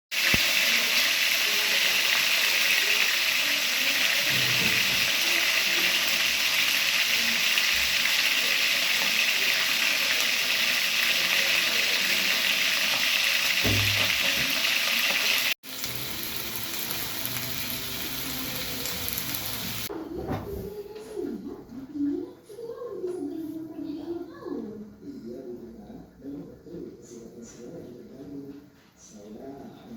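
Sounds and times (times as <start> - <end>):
food sizzling in hot oil: 0.1 - 19.9.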